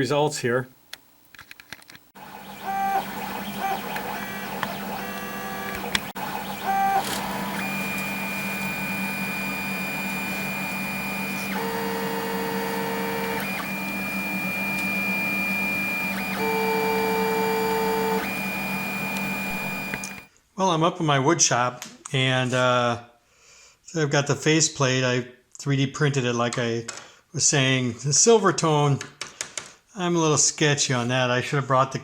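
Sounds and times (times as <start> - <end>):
steady hum: 2.2 - 20.3
stepper motors whining: 2.2 - 20.3.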